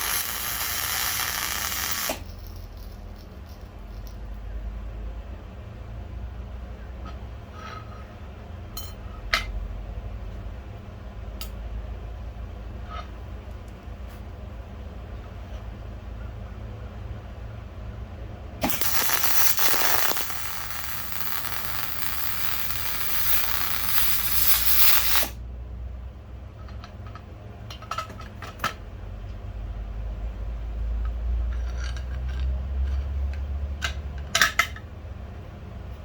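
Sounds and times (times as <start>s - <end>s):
loud steady hiss: 0.0s - 2.9s, 18.6s - 25.4s
light metallic clinks: 2.1s - 4.5s.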